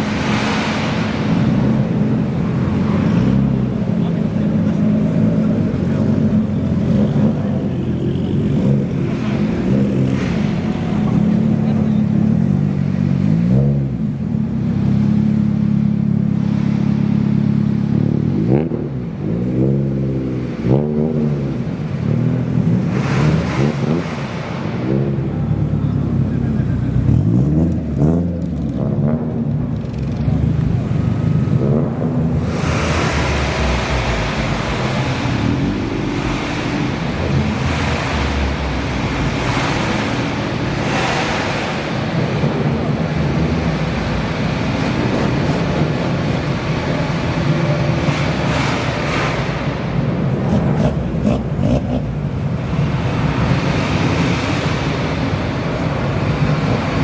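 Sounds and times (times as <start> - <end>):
loud rushing noise: 0.0 - 3.2, 32.4 - 55.3
car engines revving: 0.0 - 57.0.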